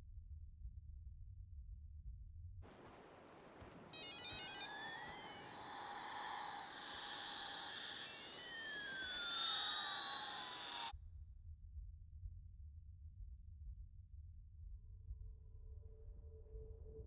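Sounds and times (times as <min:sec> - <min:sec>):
steady hiss: 0:02.7 - 0:10.9
high-pitched electronic tones: 0:03.8 - 0:10.9.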